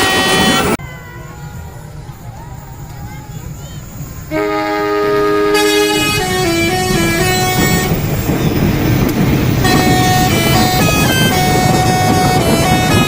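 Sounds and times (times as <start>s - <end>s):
musical horn playing a tune: 0.0s - 0.8s, 4.3s - 8.0s, 9.6s - 13.0s
low vehicle noise: 0.0s - 13.0s.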